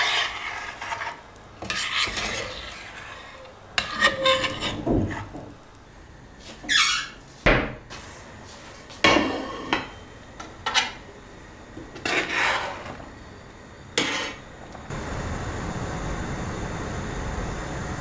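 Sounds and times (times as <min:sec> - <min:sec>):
utensil scraping: 0:00.0 - 0:05.6, 0:06.4 - 0:11.1, 0:11.8 - 0:13.1, 0:14.0 - 0:14.6
dishes clinking and knocking: 0:09.0 - 0:11.0.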